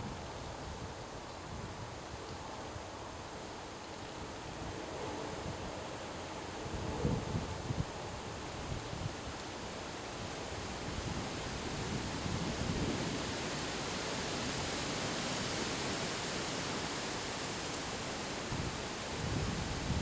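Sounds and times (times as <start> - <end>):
strong wind through trees: 0.0 - 20.0.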